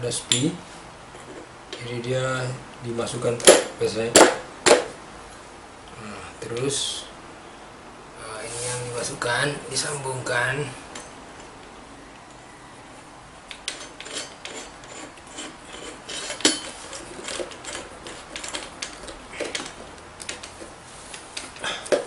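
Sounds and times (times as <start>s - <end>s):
metal parts clicking and knocking: 13.5s - 20.7s.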